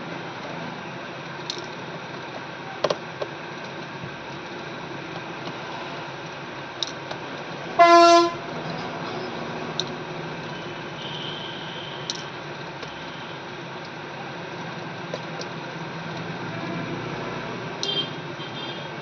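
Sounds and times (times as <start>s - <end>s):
steady background hum: 0.0s - 19.0s
short horn toot: 7.8s - 8.4s.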